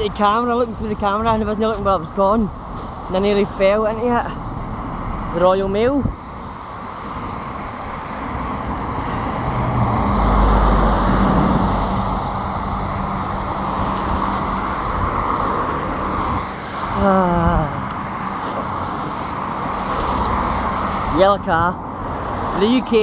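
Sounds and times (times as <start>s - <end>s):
vehicle passing with deep rumble: 0.0s - 23.0s
traffic hiss: 1.6s - 4.4s, 11.4s - 23.0s.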